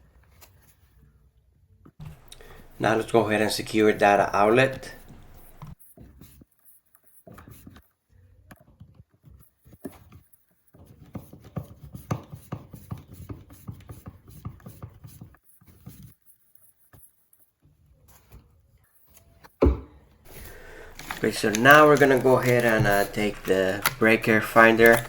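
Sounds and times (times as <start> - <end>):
hand screwdriver clicking and scraping: 20.3 - 25.0
outlet being handled: 20.3 - 25.0.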